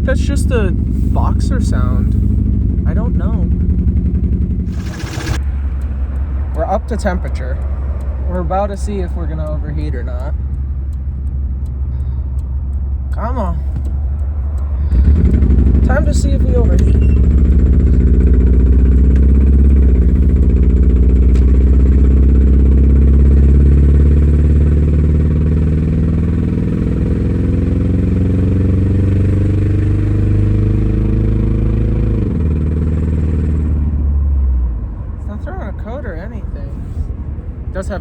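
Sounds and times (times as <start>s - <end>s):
unmuffled car engine accelerating: 0.0s - 38.0s.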